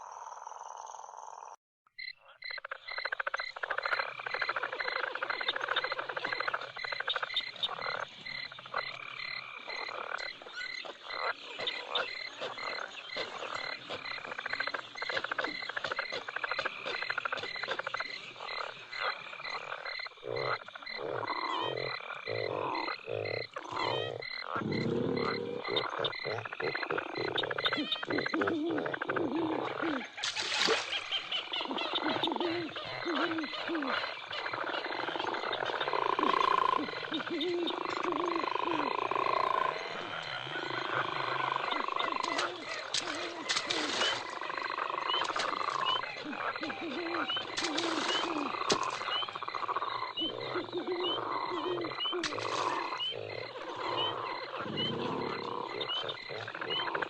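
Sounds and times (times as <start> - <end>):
frogs croaking: 0.0 - 57.0
deep slow croaks: 2.8 - 30.2, 31.0 - 57.0
pulsing insect-like chirp: 29.4 - 57.0.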